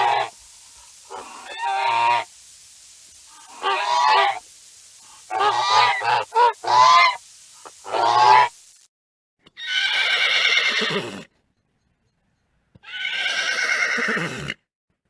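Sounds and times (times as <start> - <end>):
horse whinnying: 9.5 - 11.3, 12.8 - 14.6.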